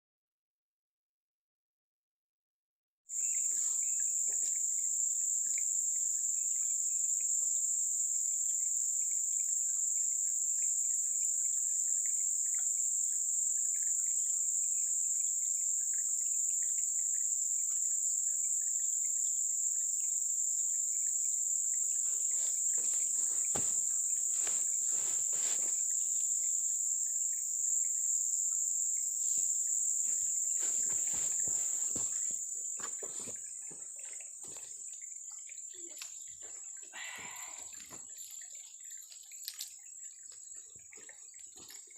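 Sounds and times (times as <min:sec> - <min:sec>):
faint chirps: 0:03.1 - 0:33.9, 0:34.5 - 0:38.3
crickets and insects droning: 0:03.1 - 0:41.9
rustling and knocking: 0:22.4 - 0:25.8, 0:30.6 - 0:33.4.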